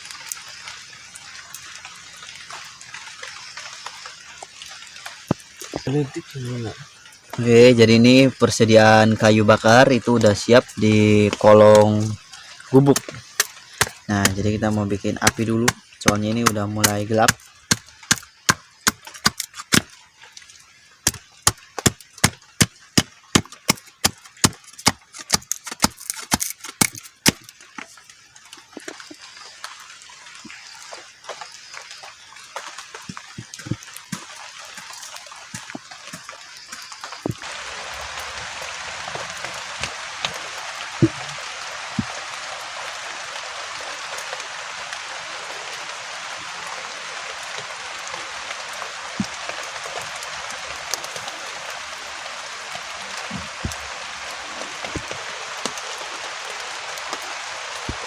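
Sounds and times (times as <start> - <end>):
heavy rain hissing: 0.0 - 58.0
blade chopping firewood: 12.8 - 20.0, 21.0 - 27.6.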